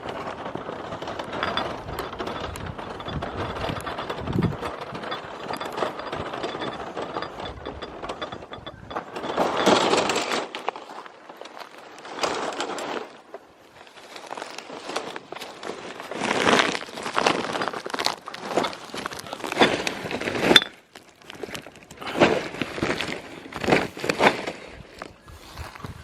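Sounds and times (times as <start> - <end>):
wind rumbling on microphone: 0.0 - 10.6, 22.4 - 26.0
plastic and paper crinkling: 0.0 - 26.0.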